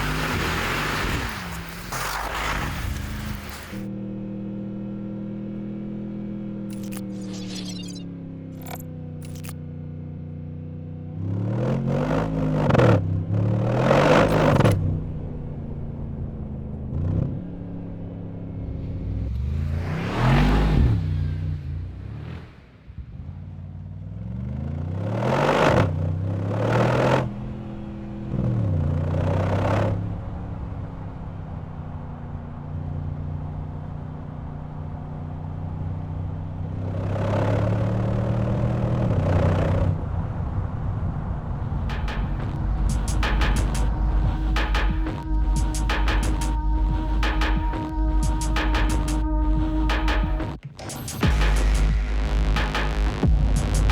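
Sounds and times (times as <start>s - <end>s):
car engine revving: 10.7s - 32.0s, 35.8s - 53.9s.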